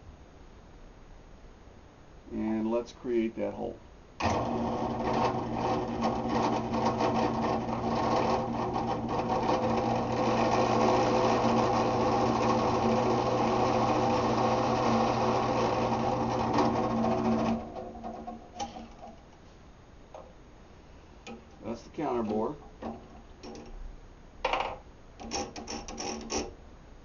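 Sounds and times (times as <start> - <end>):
drill bit cutting rattle: 4.2 - 18.9
drill press motor hum: 4.2 - 19.2.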